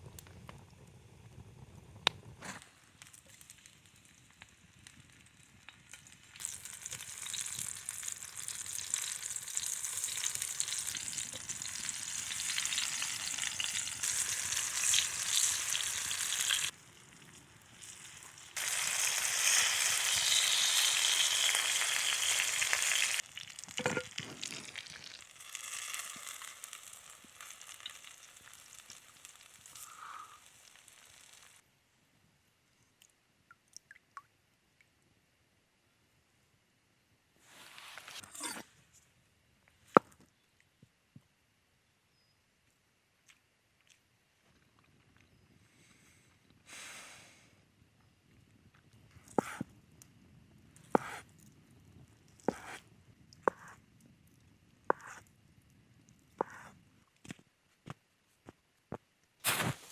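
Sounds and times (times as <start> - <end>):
food sizzling over a fire: 0.0 - 31.6, 49.1 - 56.8, 59.4 - 59.9.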